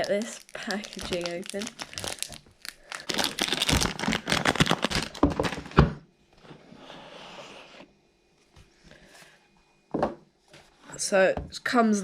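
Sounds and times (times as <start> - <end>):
packaging crinkling: 0.0 - 5.8.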